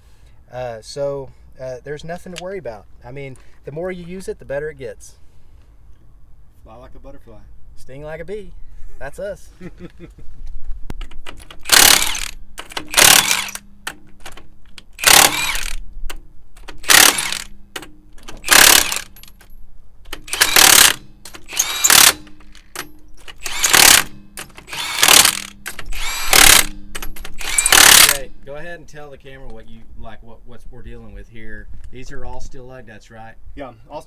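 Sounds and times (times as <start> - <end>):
wrench turning lug nuts: 11.0 - 28.3.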